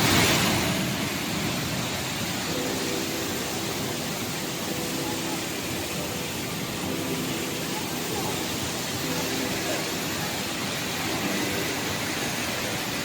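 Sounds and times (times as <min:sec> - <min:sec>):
waterfall rushing: 0:00.0 - 0:13.0
faint voices: 0:02.2 - 0:13.0.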